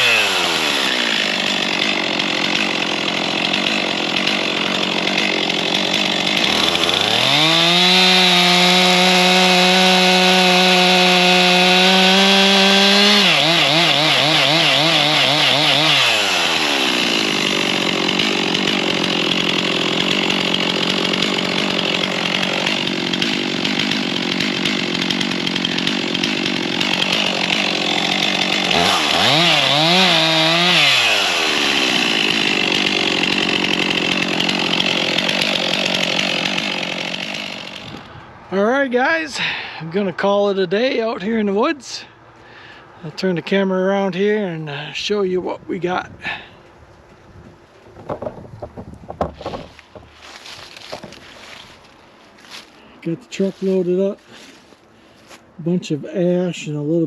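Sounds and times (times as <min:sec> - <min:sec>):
chainsaw revving: 0:00.0 - 0:38.1.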